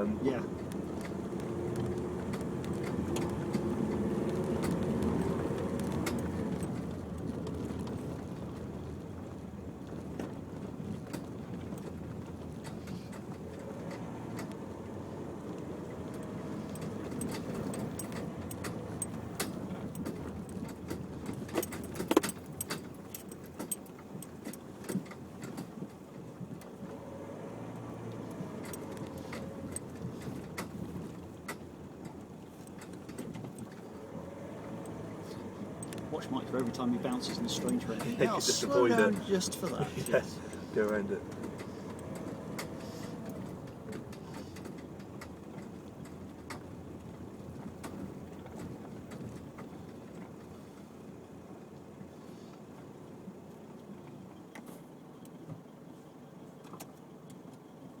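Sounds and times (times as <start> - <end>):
engine and tyre rumble: 0.0 - 58.0
car rattles and knocks: 15.9 - 26.7, 28.0 - 50.5.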